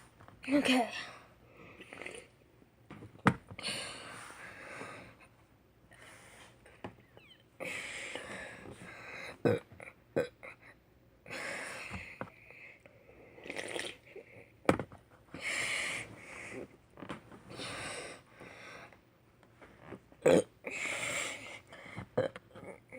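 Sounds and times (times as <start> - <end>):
boy burping: 9.4 - 10.6, 20.2 - 20.9, 22.2 - 22.9.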